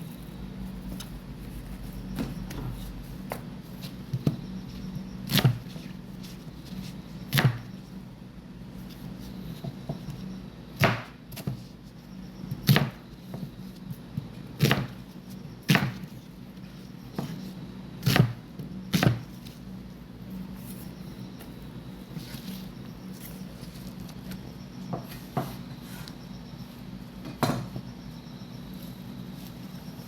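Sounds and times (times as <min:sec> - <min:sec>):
knife chopping on cutting board: 0:07.3 - 0:07.7, 0:10.8 - 0:11.6, 0:12.6 - 0:13.5, 0:14.6 - 0:15.0, 0:15.7 - 0:16.1, 0:18.0 - 0:19.3.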